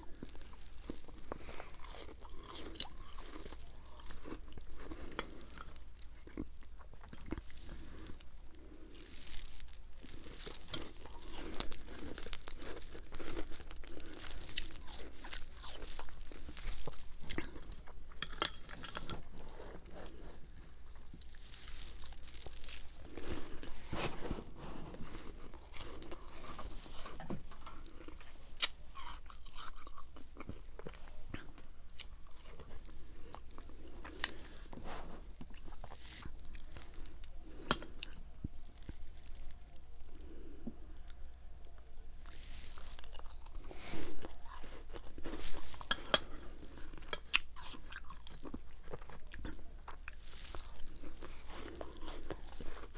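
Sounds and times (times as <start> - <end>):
person chewing ice crunching: 0.0 - 34.5, 42.2 - 52.9.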